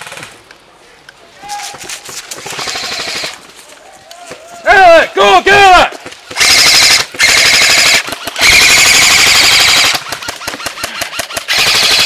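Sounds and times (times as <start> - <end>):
airsoft guns firing bursts: 2.3 - 3.4, 6.2 - 12.0.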